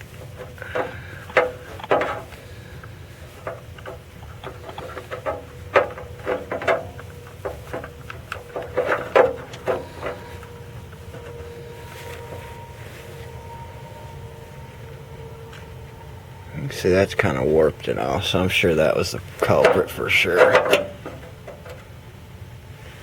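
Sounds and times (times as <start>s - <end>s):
hand tools on metal: 0.0s - 12.6s, 17.2s - 21.9s
low hum: 0.0s - 23.0s.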